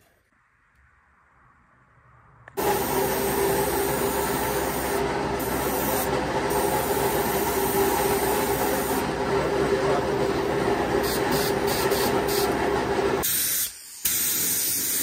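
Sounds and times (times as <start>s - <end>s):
workshop machine running: 2.5s - 13.3s.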